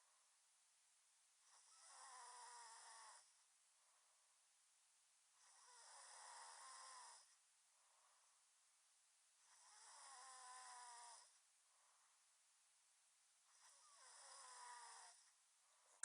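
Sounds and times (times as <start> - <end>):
soft breaths: 1.4 - 4.6, 5.3 - 8.7, 9.4 - 12.6, 13.4 - 16.0
person snoring: 5.4 - 7.3, 9.5 - 11.3, 13.5 - 15.2.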